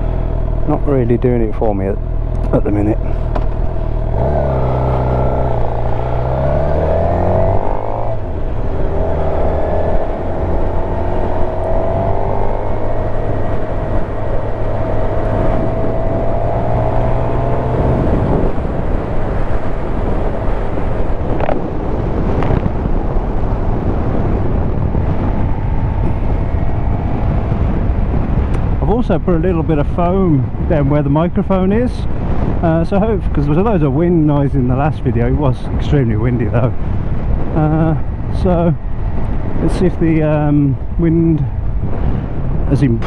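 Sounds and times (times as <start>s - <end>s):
motorcycle engine accelerating: 0.0s - 32.8s, 36.5s - 42.9s
wind noise on microphone: 0.0s - 43.0s.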